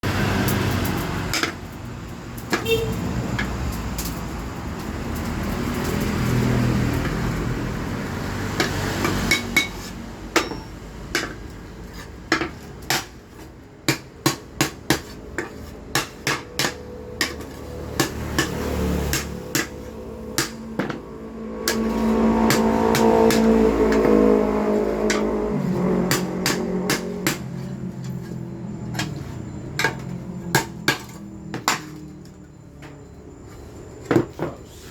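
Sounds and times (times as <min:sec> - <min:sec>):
hammer striking steel: 0:08.6 - 0:11.4, 0:13.8 - 0:24.3, 0:26.0 - 0:28.2.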